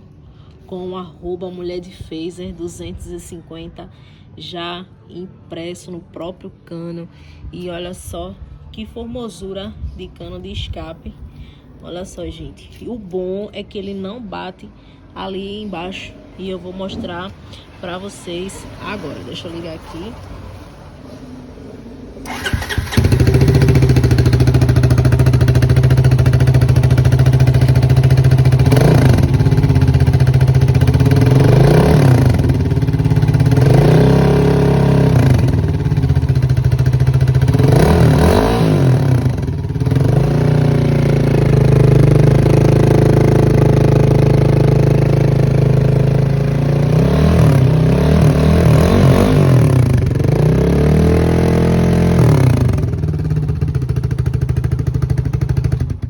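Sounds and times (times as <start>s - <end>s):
motorcycle engine revving: 22.2s - 56.0s.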